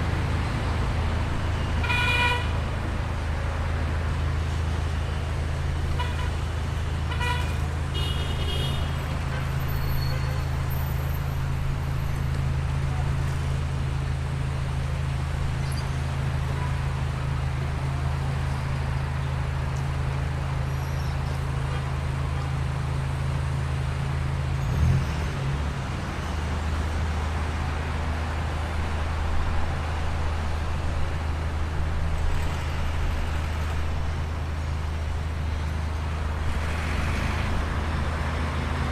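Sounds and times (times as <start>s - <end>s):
idling engines rumbling: 0.0s - 38.9s
car horns tooting: 1.6s - 2.6s, 7.1s - 10.6s.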